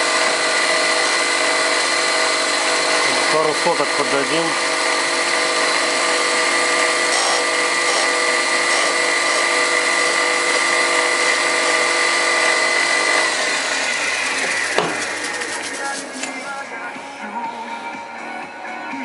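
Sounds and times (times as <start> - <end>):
disc grinding steel: 0.0 - 16.6.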